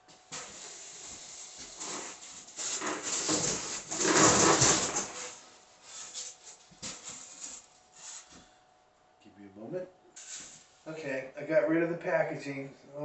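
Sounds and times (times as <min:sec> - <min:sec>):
packaging rustling and scraping: 0:00.3 - 0:08.4, 0:10.2 - 0:10.7.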